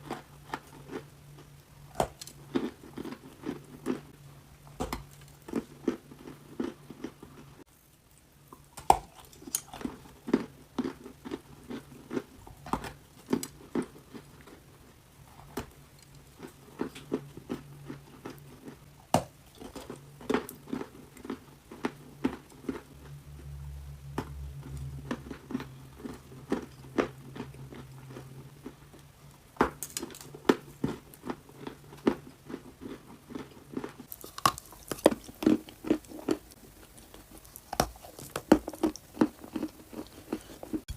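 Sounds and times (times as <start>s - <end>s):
person chewing crunchy clay: 0.0s - 7.7s, 8.5s - 40.9s
faint low hum: 0.0s - 40.9s.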